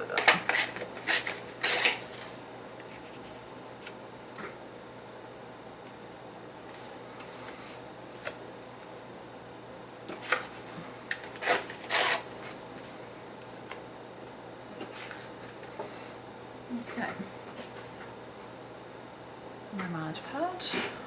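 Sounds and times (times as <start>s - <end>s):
paper ripping: 0.2s - 3.3s, 11.2s - 12.6s
paper rustling: 0.2s - 4.0s, 6.7s - 9.0s, 10.1s - 13.8s, 14.7s - 16.0s.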